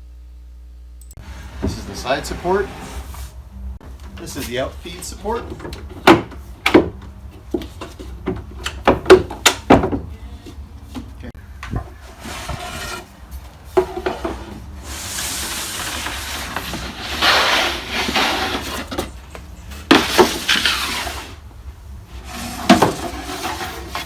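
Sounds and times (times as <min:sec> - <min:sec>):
wood scraping and rubbing: 0:01.5 - 0:03.4, 0:10.5 - 0:21.4, 0:22.1 - 0:24.0
wooden parts knocking: 0:05.4 - 0:10.1.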